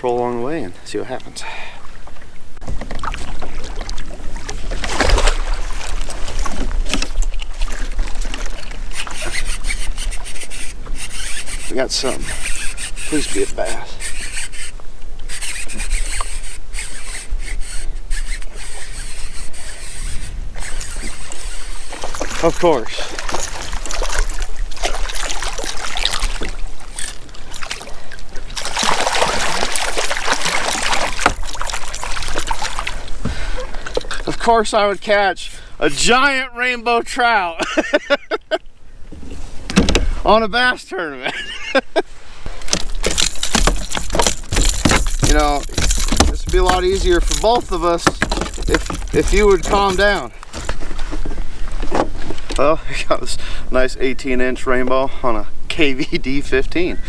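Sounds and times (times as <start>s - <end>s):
kayak splashes and knocks: 2.0s - 9.4s, 21.9s - 34.2s, 39.1s - 40.3s, 42.6s - 52.6s.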